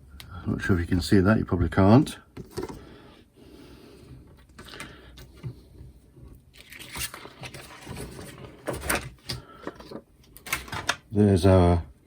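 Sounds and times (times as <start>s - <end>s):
paper rustling and scraping: 6.5s - 10.0s.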